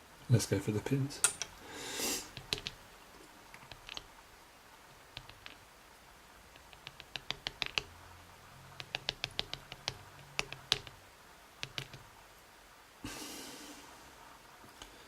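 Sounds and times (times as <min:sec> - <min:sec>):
lock pins clicking: 0:03.6 - 0:04.1, 0:11.6 - 0:12.0.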